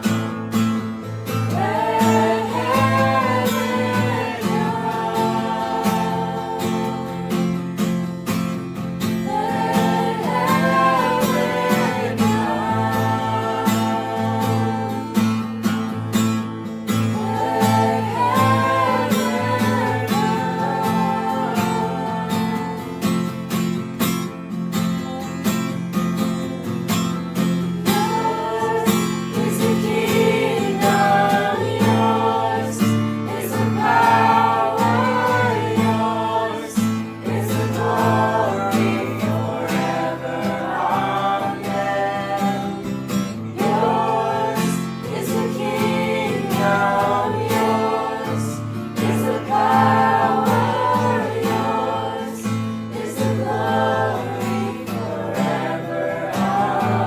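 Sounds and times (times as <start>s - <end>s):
strummed acoustic guitar: 0.0s - 57.0s
person singing: 9.3s - 15.4s.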